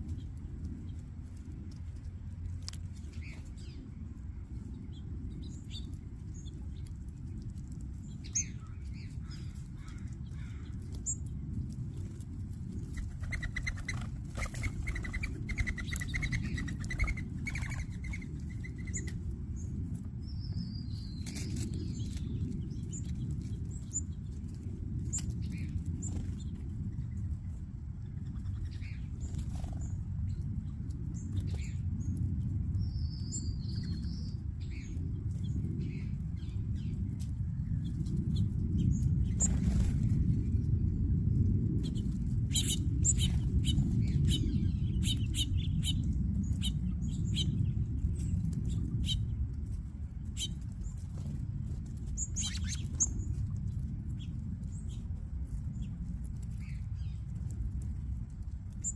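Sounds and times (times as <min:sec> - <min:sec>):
steady low rumble: 0:00.0 - 0:58.9
birds chirping: 0:01.8 - 0:27.3, 0:50.2 - 0:53.4.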